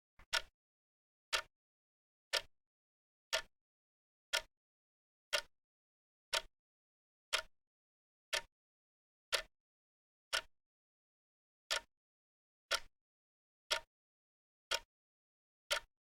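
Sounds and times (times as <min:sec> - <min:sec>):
clock ticking: 0:00.2 - 0:00.5, 0:09.3 - 0:09.5.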